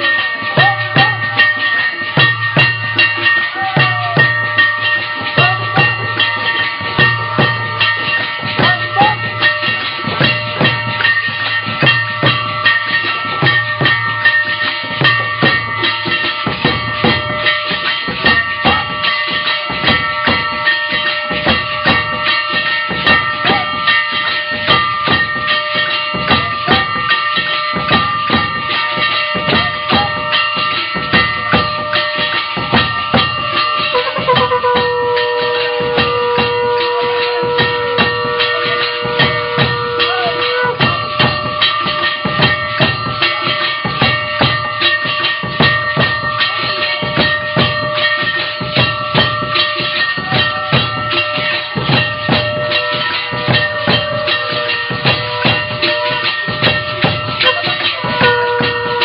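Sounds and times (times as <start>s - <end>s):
clanging percussion and drum: 0.0s - 59.0s
ringing metal tones: 0.0s - 59.0s
long held note: 33.9s - 42.2s.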